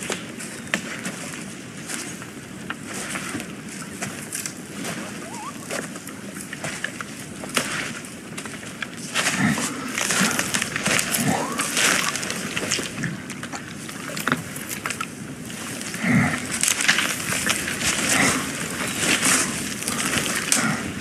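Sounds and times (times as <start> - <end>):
leaves and twigs crackling: 0.0 - 21.0
wind: 0.0 - 21.0
short low vocal sounds: 11.2 - 11.8.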